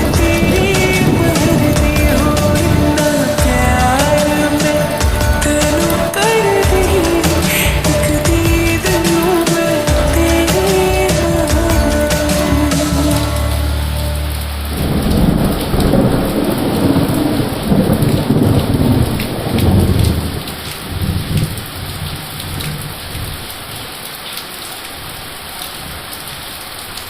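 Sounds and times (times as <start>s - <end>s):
rolling thunder rumble: 0.0s - 6.0s, 14.7s - 23.4s
steady rain: 0.0s - 27.0s.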